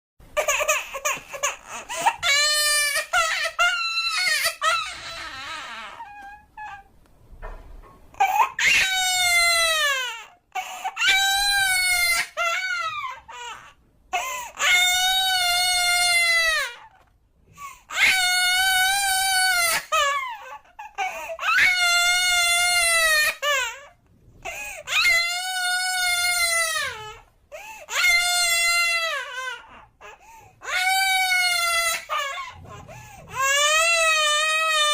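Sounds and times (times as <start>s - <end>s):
baby crying: 0.4s - 6.9s, 8.1s - 34.9s
baby catching breaths: 24.4s - 24.9s, 32.6s - 33.4s.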